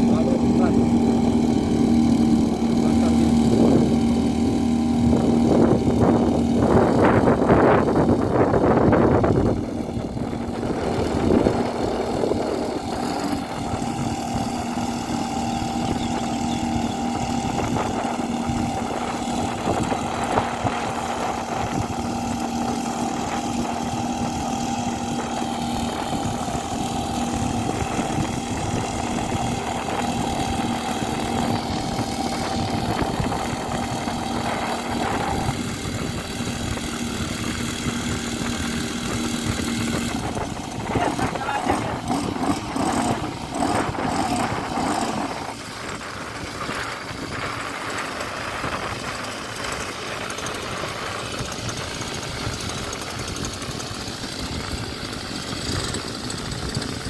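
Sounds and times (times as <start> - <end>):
two-stroke pump engine running: 0.0 - 57.0.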